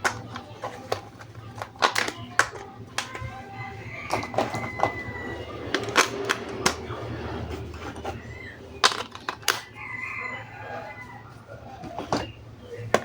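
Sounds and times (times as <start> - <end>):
plastic toy pieces clicking: 0.0 - 3.3, 8.8 - 9.7.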